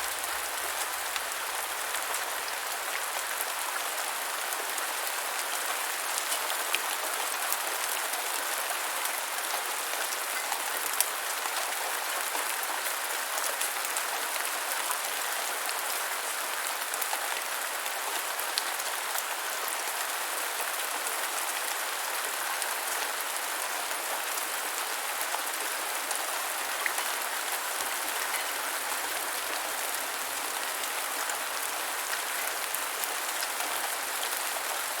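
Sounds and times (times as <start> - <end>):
steady rain falling: 0.0 - 35.0.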